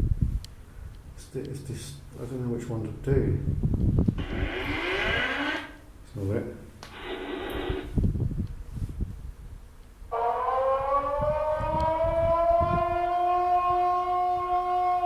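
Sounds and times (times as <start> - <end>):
air-raid siren wailing: 4.2 - 5.9, 10.1 - 15.0.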